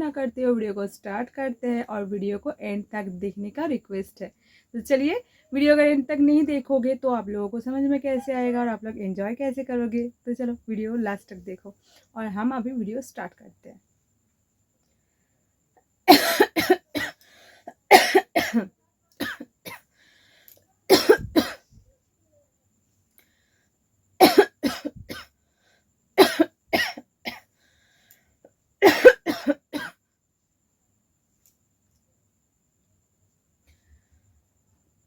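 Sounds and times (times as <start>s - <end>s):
person coughing: 16.1s - 19.8s, 20.9s - 21.6s, 24.2s - 25.3s, 26.2s - 27.4s, 28.8s - 29.9s.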